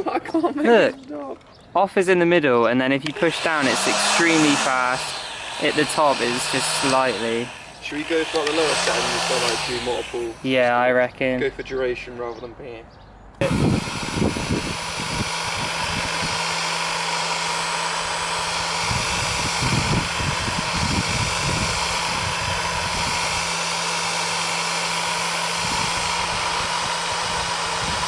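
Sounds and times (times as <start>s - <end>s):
heat gun blowing air: 3.0s - 10.7s, 13.4s - 28.0s.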